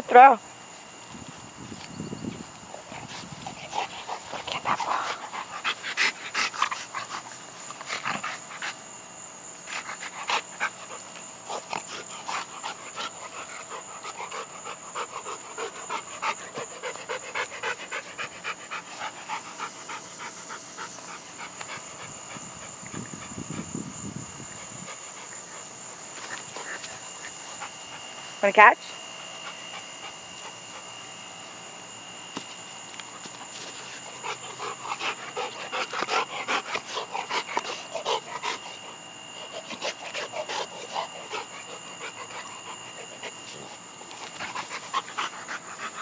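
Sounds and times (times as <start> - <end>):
dog panting rapidly: 2.8 - 8.8, 9.8 - 23.7, 33.8 - 46.0.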